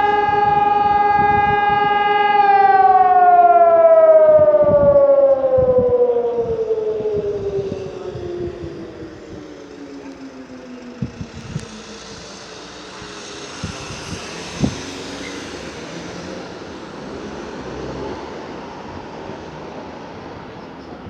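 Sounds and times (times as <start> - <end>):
fire siren winding down: 0.0 - 20.5
vehicle noise: 0.0 - 21.0.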